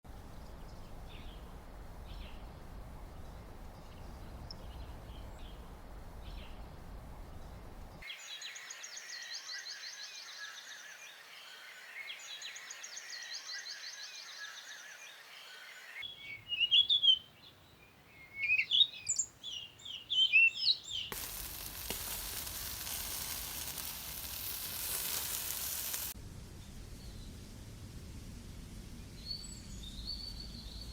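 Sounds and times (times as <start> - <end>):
faint bird chirps: 8.0 - 21.1
bird calls with sliding notes: 18.2 - 21.1
steady hiss: 21.1 - 30.0
low rumble: 26.1 - 30.9.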